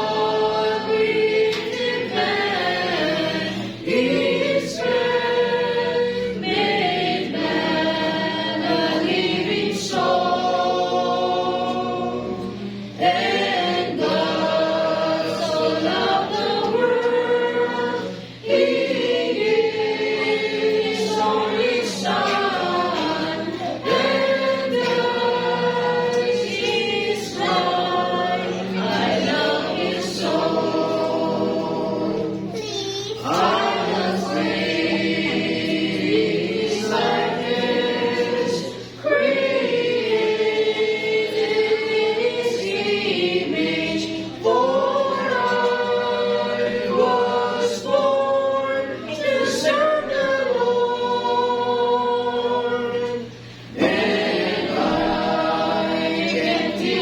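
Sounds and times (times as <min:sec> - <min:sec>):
congregation singing a hymn: 0:00.0 - 0:32.6, 0:33.2 - 0:57.0.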